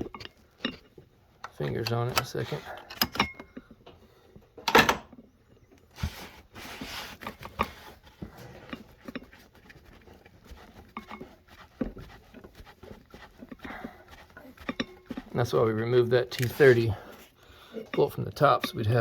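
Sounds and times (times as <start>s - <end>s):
rustling: 5.8s - 17.5s.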